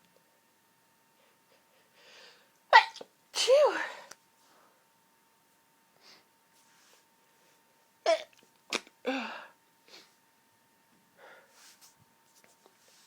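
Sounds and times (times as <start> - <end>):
woman sneezing: 2.7 - 4.0, 8.1 - 9.4
quiet breaths: 11.0 - 13.0.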